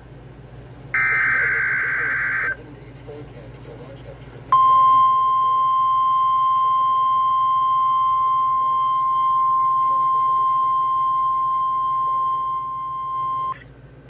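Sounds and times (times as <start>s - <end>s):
steady warning alarm beep: 1.0s - 2.6s, 4.5s - 13.6s.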